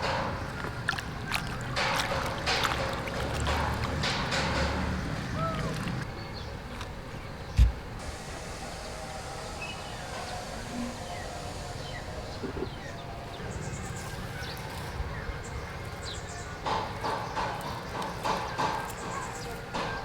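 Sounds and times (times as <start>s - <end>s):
steady background hiss: 7.6s - 13.9s.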